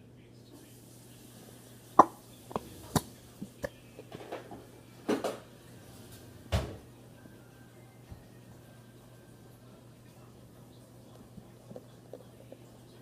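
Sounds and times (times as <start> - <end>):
knocks and taps of utensils: 2.0 - 3.1.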